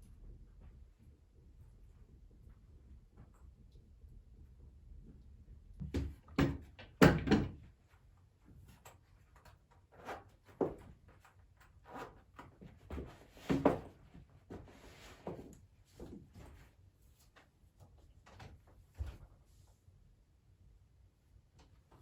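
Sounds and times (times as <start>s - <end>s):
knocks and thuds of objects: 5.8s - 7.6s.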